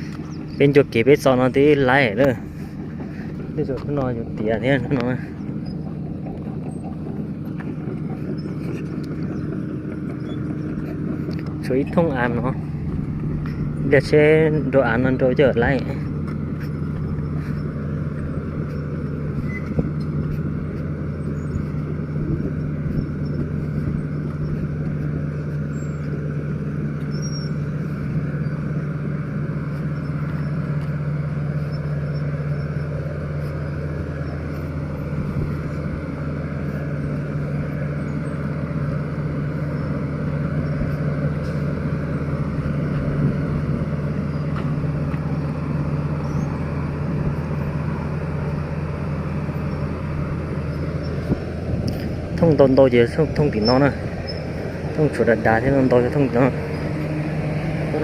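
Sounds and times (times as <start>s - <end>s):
diesel engine droning: 0.0s - 58.0s.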